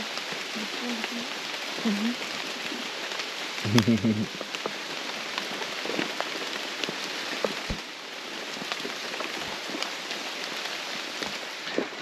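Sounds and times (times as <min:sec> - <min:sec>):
rain on foliage: 0:00.0 - 0:12.0.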